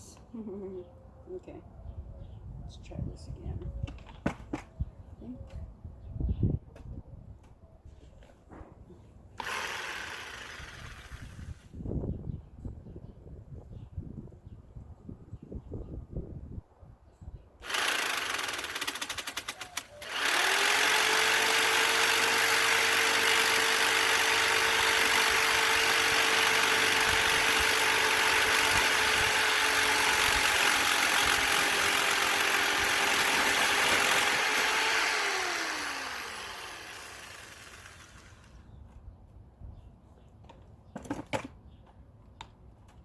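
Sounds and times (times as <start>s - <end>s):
electric power tool cutting: 9.4s - 11.6s, 17.6s - 38.6s.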